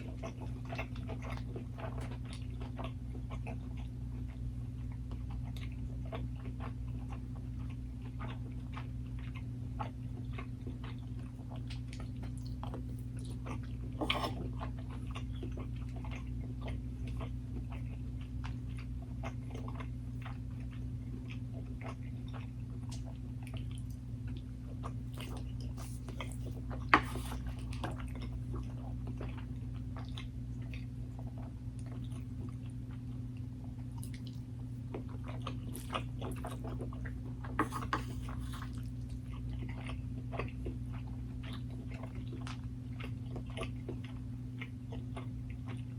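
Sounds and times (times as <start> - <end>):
person chewing food: 0.0 - 45.9
steady low hum: 0.0 - 45.9.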